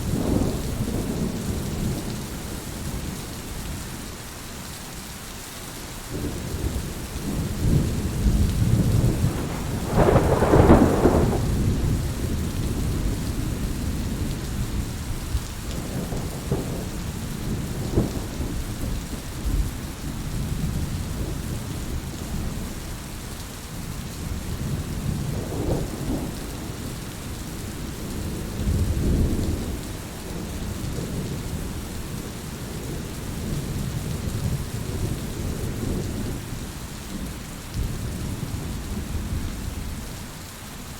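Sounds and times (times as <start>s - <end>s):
rolling thunder: 0.0s - 2.2s, 6.1s - 22.6s
steady rain falling: 0.0s - 40.9s.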